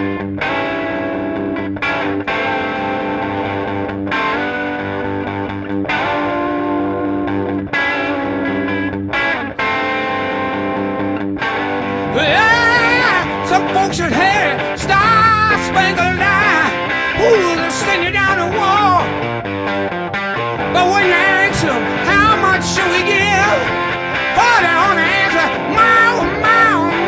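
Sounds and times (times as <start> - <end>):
distorted electric guitar riff: 0.0 - 27.0
person singing: 11.9 - 19.2, 20.7 - 27.0.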